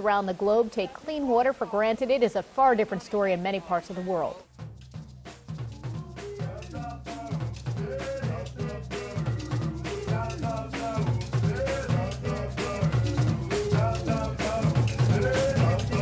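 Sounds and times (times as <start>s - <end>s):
background music with drum beat: 4.4s - 16.0s.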